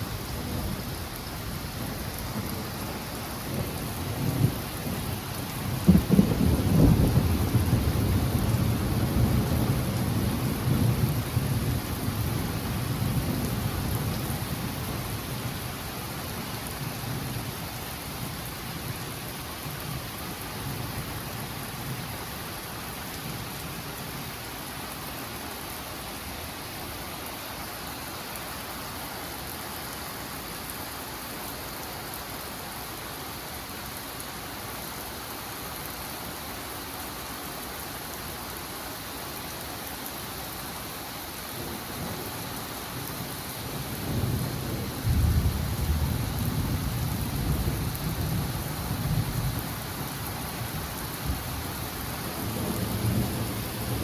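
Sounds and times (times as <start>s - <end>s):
rain hissing: 0.0s - 20.1s, 21.5s - 54.0s
thunder crack and rumble: 3.5s - 12.4s, 44.1s - 49.6s.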